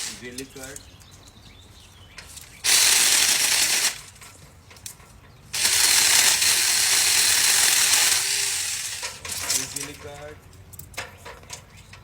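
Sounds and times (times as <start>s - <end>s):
mini chainsaw cutting branch: 0.0s - 0.2s, 2.6s - 4.2s, 5.6s - 9.9s.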